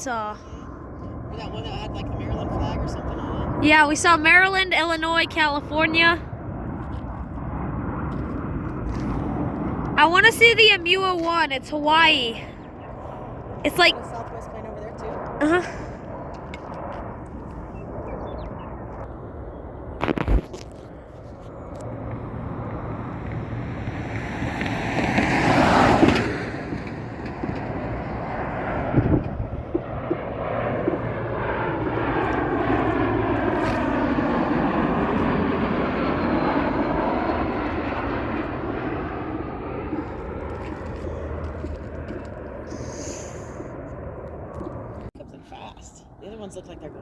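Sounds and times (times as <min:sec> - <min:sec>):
jet airliner engines passing: 0:00.0 - 0:47.0.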